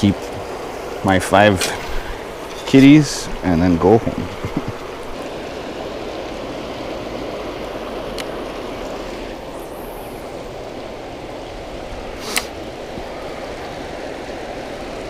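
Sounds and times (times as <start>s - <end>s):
faint click: 12.3s - 12.5s.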